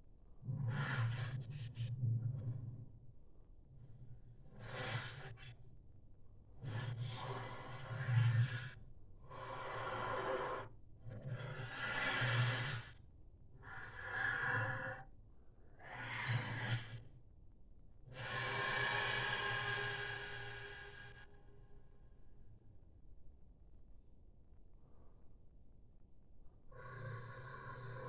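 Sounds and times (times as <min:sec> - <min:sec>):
breathy creature exhalations: 0:18.2 - 0:21.3.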